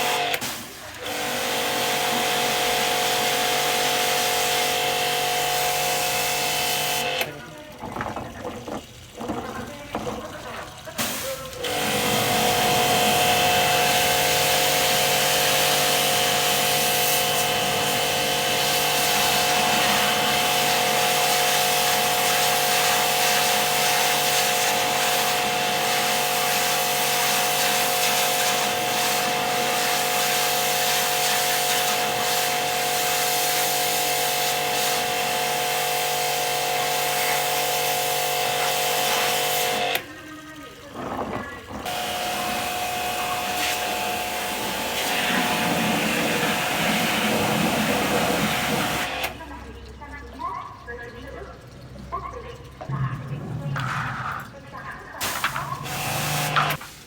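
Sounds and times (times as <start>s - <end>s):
motor-driven tool running: 55.4s - 56.8s.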